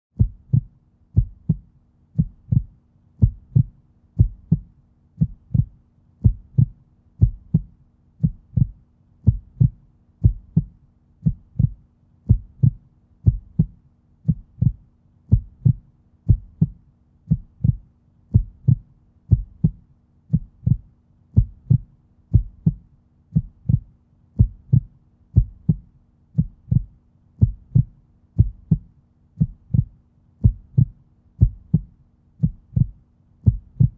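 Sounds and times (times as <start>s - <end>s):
heartbeat: 0.2s - 33.9s.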